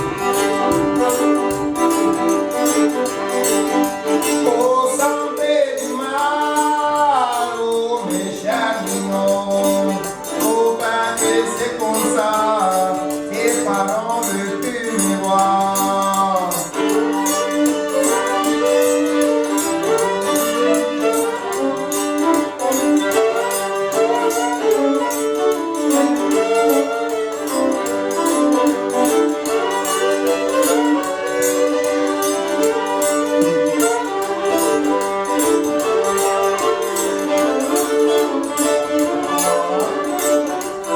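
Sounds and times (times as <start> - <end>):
string band playing: 0.0 - 40.9
person singing: 4.0 - 40.9.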